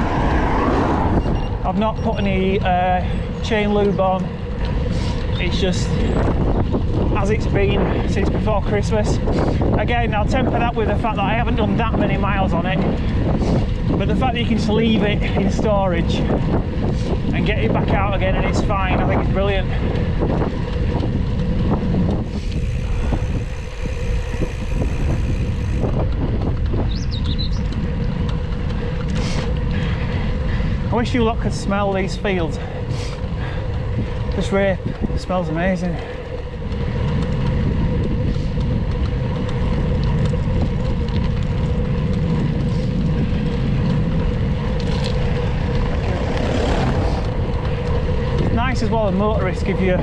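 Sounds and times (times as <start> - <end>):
car passing: 0.0 - 8.4, 27.5 - 50.0
bike tyres rolling on gravel: 0.0 - 50.0
wind on microphone: 0.0 - 50.0.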